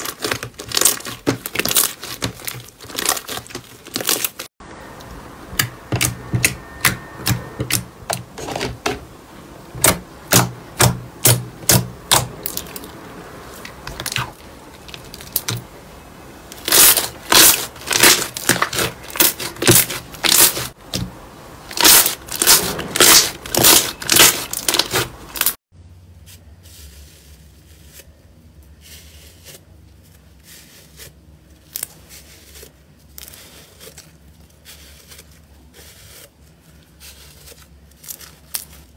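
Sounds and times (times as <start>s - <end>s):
slime crackling and popping: 0.0s - 4.5s, 16.5s - 20.8s, 21.7s - 25.6s.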